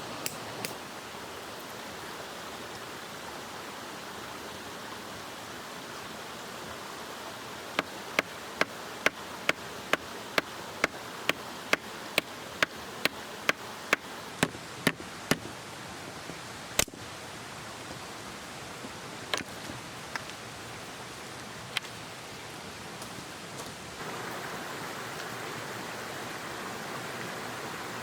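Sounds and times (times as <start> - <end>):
mountain stream rushing: 0.0 - 28.0
sharp evenly spaced knocks: 7.8 - 15.5.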